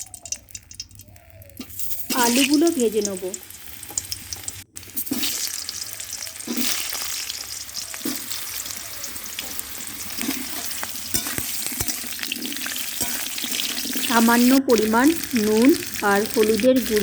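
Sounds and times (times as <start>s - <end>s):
potatoes sizzling in hot oil: 0.0s - 17.0s
stirring scrapes: 6.4s - 14.1s.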